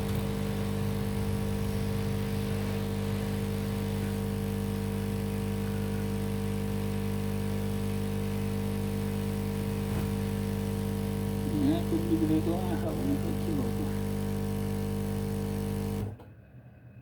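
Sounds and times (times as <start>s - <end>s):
low electrical hum: 0.0s - 4.3s.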